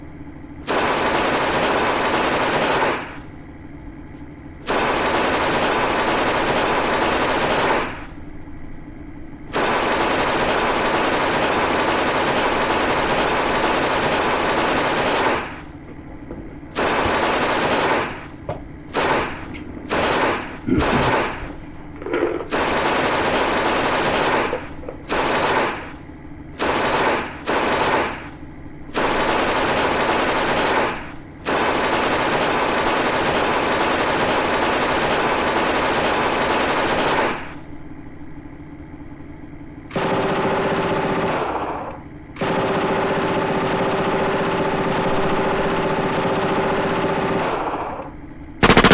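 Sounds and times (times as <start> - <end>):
submachine gun firing bursts: 0.6 - 3.3, 4.6 - 8.2, 9.5 - 15.8, 16.7 - 37.7, 39.9 - 48.0, 48.6 - 48.9.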